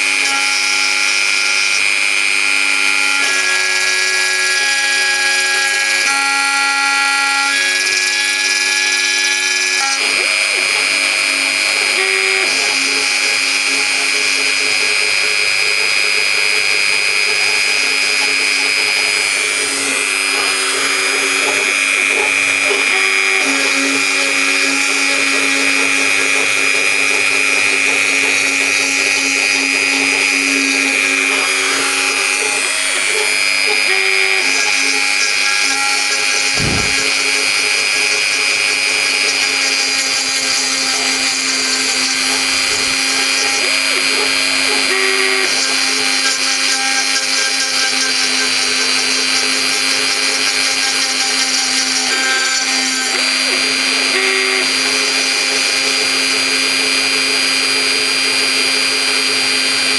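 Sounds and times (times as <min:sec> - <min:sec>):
router spindle whining cutting wood: 0:00.0 - 0:59.9
low thud: 0:36.6 - 0:37.2.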